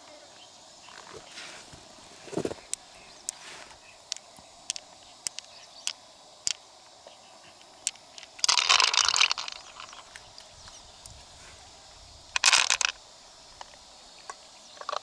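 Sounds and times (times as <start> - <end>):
crunchy shell scraping: 0.9 - 3.9, 12.4 - 13.0
mussel shells clicking: 7.8 - 11.2, 12.4 - 13.0.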